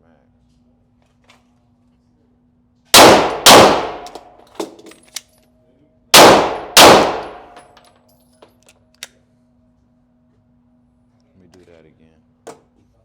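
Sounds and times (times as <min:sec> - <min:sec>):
magazine change clicks: 0:03.0 - 0:04.3, 0:06.2 - 0:07.7
pistol shots: 0:03.0 - 0:04.3, 0:06.2 - 0:07.6.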